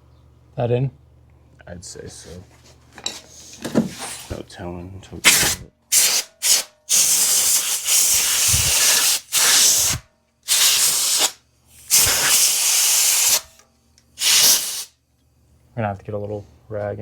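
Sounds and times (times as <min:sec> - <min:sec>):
air nozzle hissing blasts: 0:05.2 - 0:13.6, 0:14.2 - 0:14.9.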